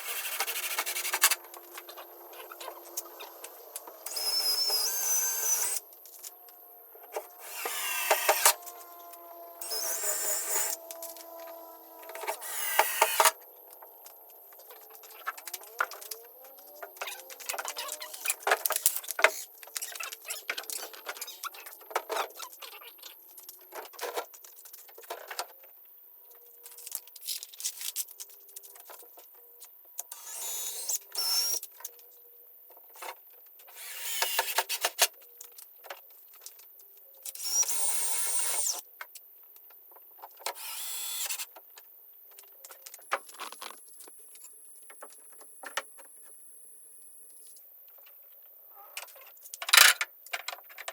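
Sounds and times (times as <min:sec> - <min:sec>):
small power tool bursts: 0:04.0 - 0:05.8, 0:07.2 - 0:13.4, 0:30.2 - 0:31.6, 0:33.8 - 0:34.8, 0:37.4 - 0:38.8, 0:40.6 - 0:41.4.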